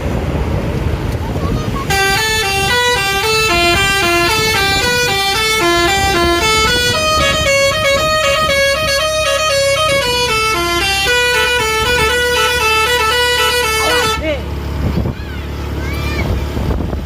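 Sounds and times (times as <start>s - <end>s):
low engine rumble: 0.0s - 17.0s
musical air horn tune: 1.9s - 14.3s.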